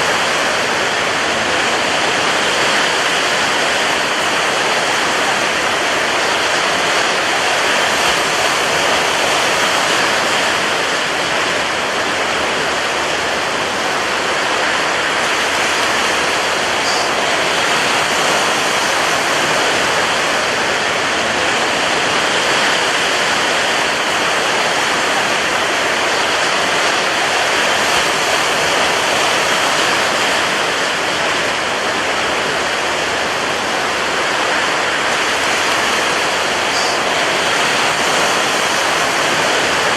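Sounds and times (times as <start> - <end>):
rough sea: 0.0 - 39.9
strong wind: 0.0 - 39.9.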